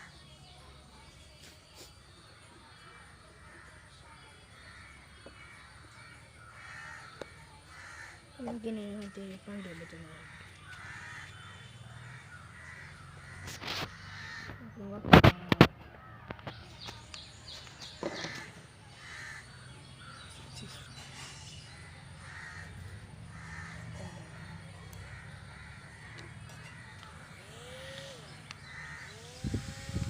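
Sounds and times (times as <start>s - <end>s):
crows cawing: 6.4s - 8.4s, 9.1s - 14.8s, 18.0s - 20.2s, 21.8s - 29.3s.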